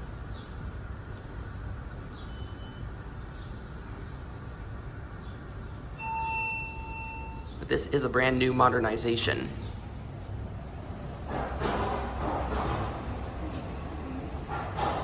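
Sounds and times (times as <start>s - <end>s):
long electronic beep: 6.0s - 7.6s.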